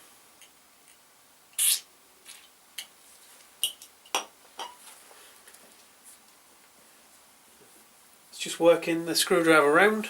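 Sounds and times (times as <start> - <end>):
aerosol spray hiss: 1.6 - 1.9.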